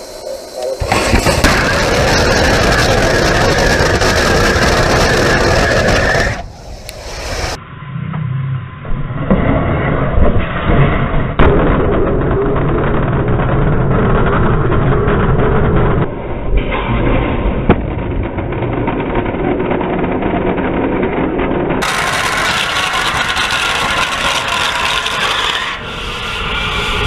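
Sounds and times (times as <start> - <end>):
rocket fire roaring: 0.0 - 27.0
sharp crack: 0.8 - 7.6, 10.2 - 27.0.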